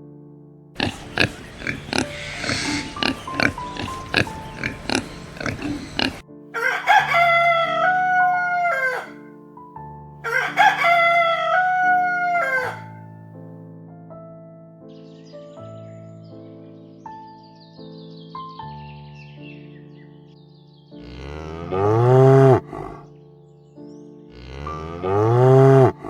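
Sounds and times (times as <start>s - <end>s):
soft piano music: 0.0s - 26.0s
animal clicking and clucking: 0.8s - 8.0s, 8.6s - 9.1s, 12.4s - 12.9s, 22.4s - 23.0s, 25.5s - 26.0s
rooster crowing: 4.9s - 9.3s, 10.2s - 13.0s, 21.7s - 23.0s, 24.5s - 26.0s.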